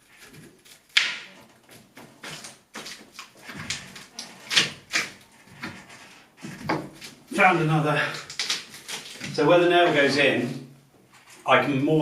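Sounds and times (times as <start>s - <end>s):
hand tools knocking on plaster wall: 5.5s - 7.1s.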